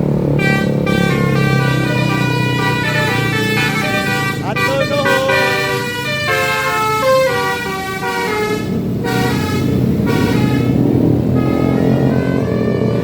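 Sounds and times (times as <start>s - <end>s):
bus engine rumble: 0.0s - 13.0s
bus horn playing a tune: 0.2s - 13.0s.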